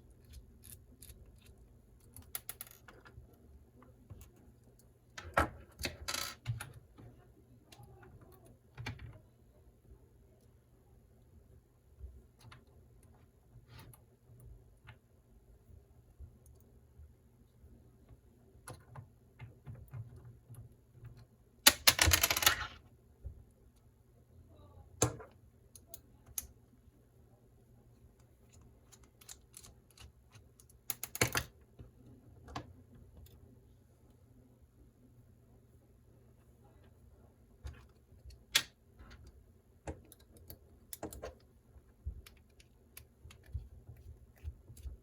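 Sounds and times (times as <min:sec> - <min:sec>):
small parts clicking and tapping: 0:00.0 - 0:09.2, 0:18.0 - 0:23.9, 0:25.0 - 0:26.7, 0:28.0 - 0:33.5, 0:37.6 - 0:45.0.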